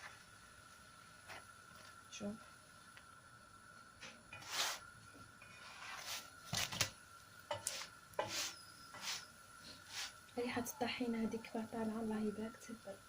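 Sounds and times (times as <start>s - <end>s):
utensil scraping and clicking on pan: 7.5s - 9.2s.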